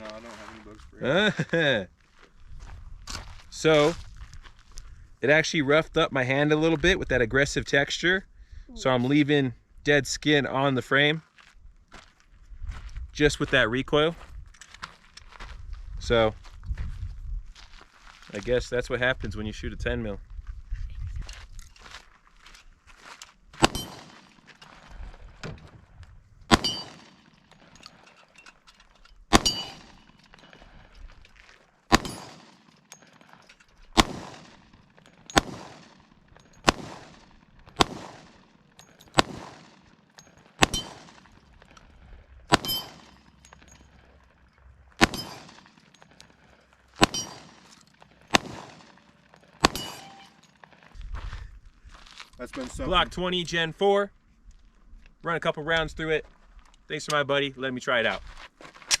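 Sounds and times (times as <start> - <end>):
handgun shots echoing: 23.6 - 24.5, 26.5 - 28.0, 29.3 - 30.5, 31.9 - 33.1, 33.9 - 41.4, 42.5 - 43.7, 45.0 - 46.0, 47.0 - 50.6.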